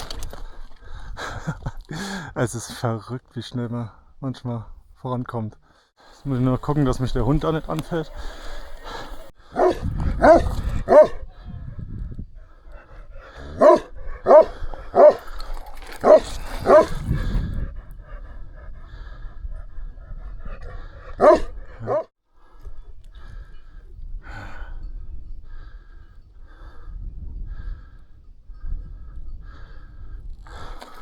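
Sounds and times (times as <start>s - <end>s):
dog barking loudly: 9.6s - 11.2s, 13.4s - 15.2s, 16.0s - 17.0s, 21.2s - 22.1s.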